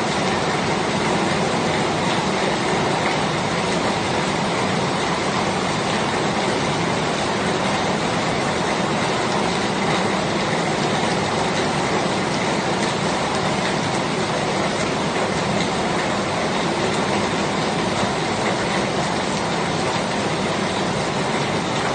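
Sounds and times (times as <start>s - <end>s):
steady rain falling: 0.0s - 21.9s
raindrop ticks: 10.8s - 21.9s.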